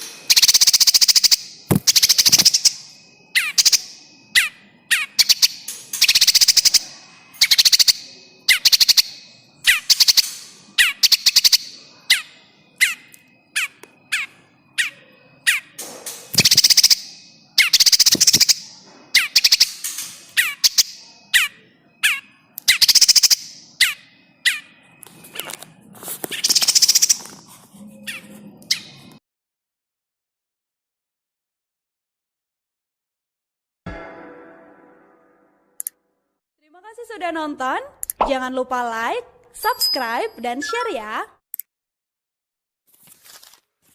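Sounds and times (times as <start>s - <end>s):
bird chattering distress calls: 0.3s - 15.8s.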